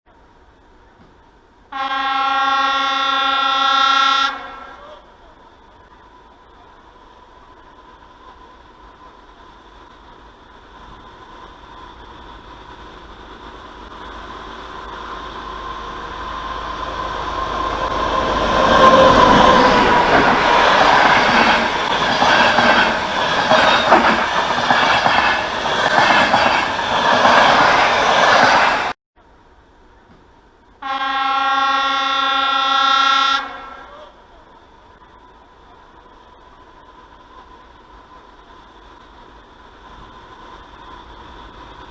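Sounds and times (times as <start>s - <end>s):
train passing rumble: 0.1s - 41.9s
train horn blast: 1.7s - 5.1s, 30.8s - 34.2s
wheels clacking over rail joints: 7.6s - 28.9s.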